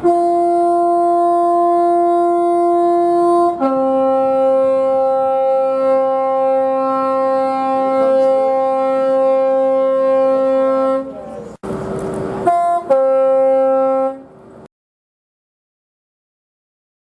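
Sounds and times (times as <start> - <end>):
train air horn two tones: 0.0 - 11.5, 12.4 - 14.4.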